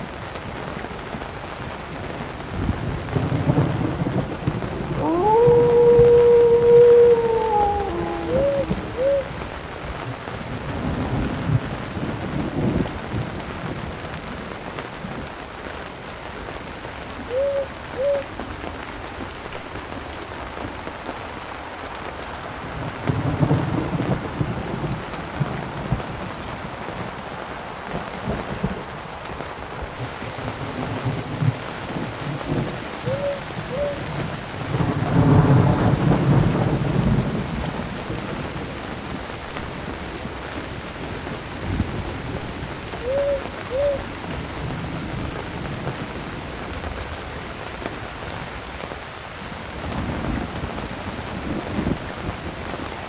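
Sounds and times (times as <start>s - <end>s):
thunder rolling: 0.0s - 48.7s, 49.5s - 53.0s
crickets chirping: 0.0s - 53.0s
rain: 0.0s - 53.0s
owl hooting: 4.8s - 10.0s, 17.2s - 18.5s, 32.7s - 34.4s, 43.0s - 44.2s.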